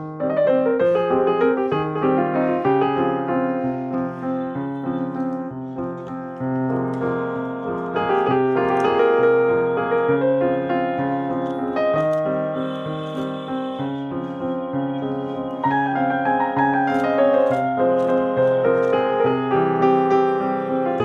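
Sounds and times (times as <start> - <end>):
piano music: 0.0 - 21.0.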